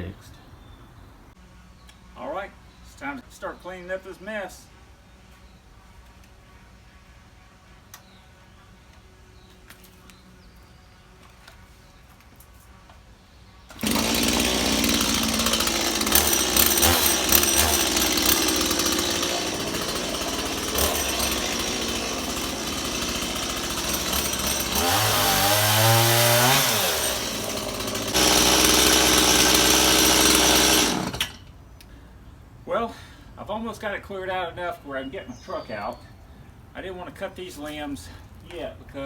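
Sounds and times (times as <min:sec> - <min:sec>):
chainsaw running at full throttle: 0:13.7 - 0:31.4.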